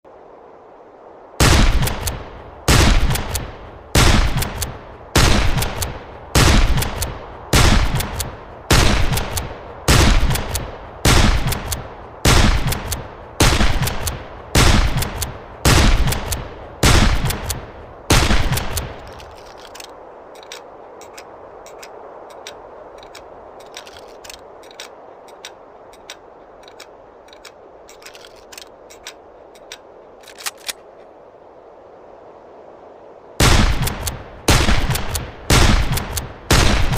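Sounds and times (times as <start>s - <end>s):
rifle shots with echo: 1.4s - 19.2s, 33.4s - 36.9s
metallic clicks of rifle reloading: 18.5s - 30.9s.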